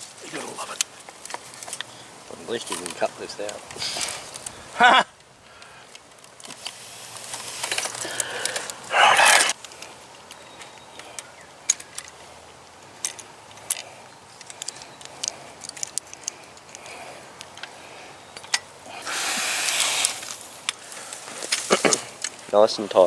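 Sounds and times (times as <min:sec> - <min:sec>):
metallic clicks and clinks: 0:13.0 - 0:16.9.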